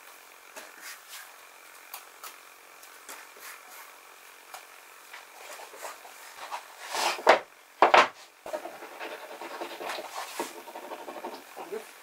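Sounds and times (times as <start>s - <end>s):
rough strokes on wood: 8.5s - 11.8s.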